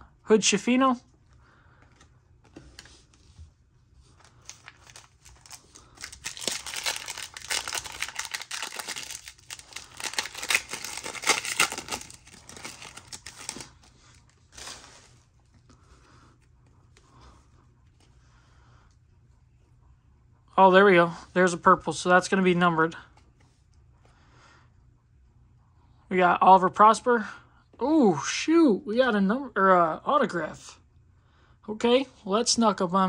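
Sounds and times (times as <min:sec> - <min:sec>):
foil wrapper tearing and crinkling: 0:04.3 - 0:15.0.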